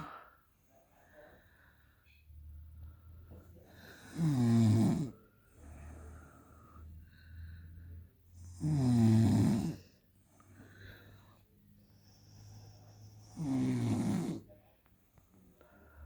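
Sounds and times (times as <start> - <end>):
soft breathing: 0.0 - 4.4, 5.1 - 8.6, 9.7 - 13.4, 14.4 - 16.0
woman snoring: 3.8 - 6.9, 8.4 - 9.9, 12.2 - 14.5.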